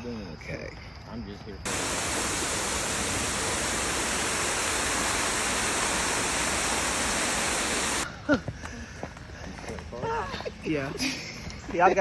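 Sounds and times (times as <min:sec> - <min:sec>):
waterfall rushing: 0:01.7 - 0:08.0.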